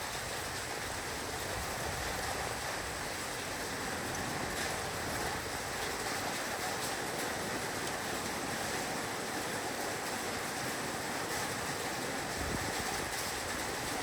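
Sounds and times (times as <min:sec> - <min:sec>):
heavy rain on a roof: 0:00.0 - 0:14.0.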